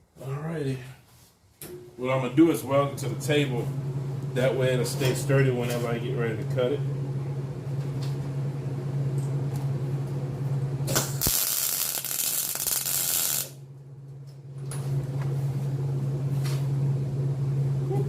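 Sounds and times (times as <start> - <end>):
steady low hum: 0.0 - 18.0
welding arc crackling and hissing: 10.9 - 13.6.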